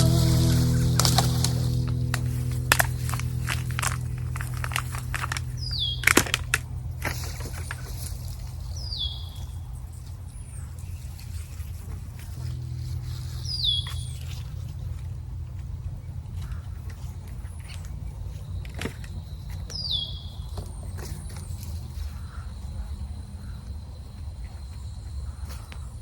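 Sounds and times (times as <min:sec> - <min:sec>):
low steady hum: 0:00.0 - 0:19.7
bird calling: 0:02.7 - 0:06.5.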